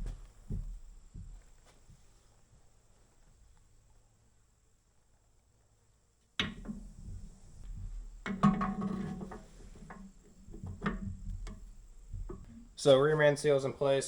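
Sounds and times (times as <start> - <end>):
clicks and knocks on engine parts: 6.4 - 12.6.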